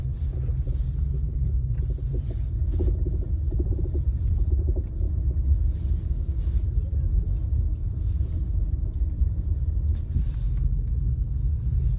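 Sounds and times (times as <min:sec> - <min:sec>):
suspension knocks and rattles: 0:00.0 - 0:06.4
road rumble: 0:00.0 - 0:11.9.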